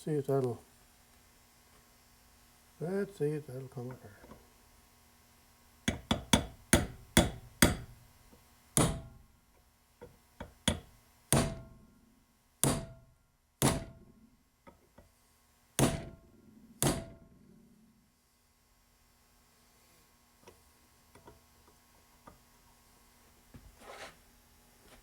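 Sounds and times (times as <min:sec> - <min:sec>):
hammer striking metal: 0:05.9 - 0:08.0, 0:08.8 - 0:09.2, 0:10.7 - 0:11.8, 0:12.6 - 0:13.0, 0:13.6 - 0:14.0, 0:16.8 - 0:17.2.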